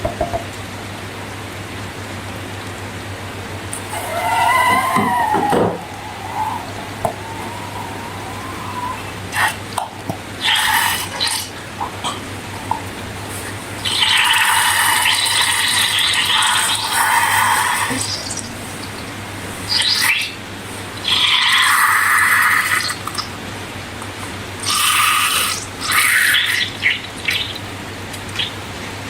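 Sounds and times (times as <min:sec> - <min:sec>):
rubber balloon squeak: 0:03.8 - 0:09.2.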